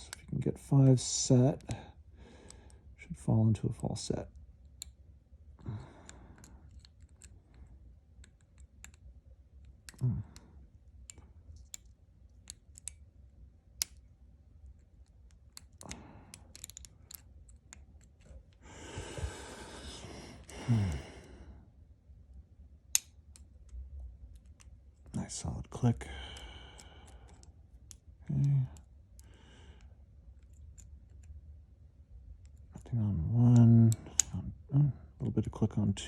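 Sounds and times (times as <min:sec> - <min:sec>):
person sighing: 0:05.6 - 0:06.4, 0:18.6 - 0:21.6
metallic clicks of lock picking: 0:06.0 - 0:10.4, 0:11.0 - 0:13.0, 0:13.8 - 0:14.0, 0:14.7 - 0:18.3, 0:22.9 - 0:24.8, 0:30.4 - 0:31.4, 0:33.5 - 0:34.4.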